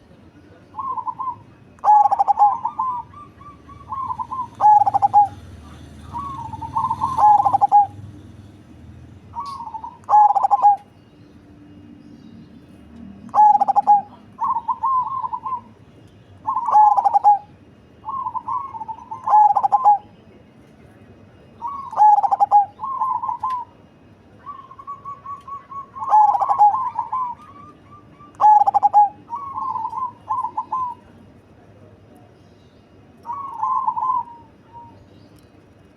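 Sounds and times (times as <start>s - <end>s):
dove cooing with rolling trill: 0.7s - 8.1s, 9.3s - 10.9s, 13.2s - 15.8s, 16.4s - 20.1s, 21.6s - 31.2s, 33.2s - 35.1s.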